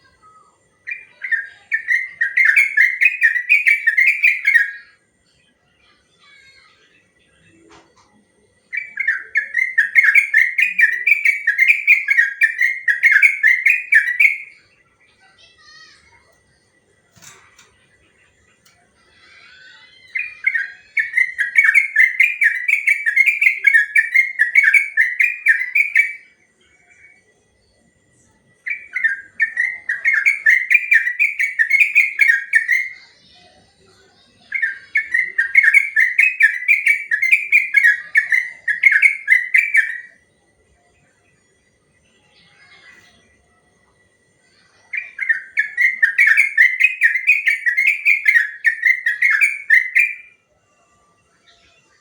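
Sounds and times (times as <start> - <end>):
bird singing rapid whistled song: 0.8 - 5.0, 8.7 - 14.8, 19.4 - 27.2, 28.6 - 33.4, 34.2 - 40.2, 44.5 - 50.4.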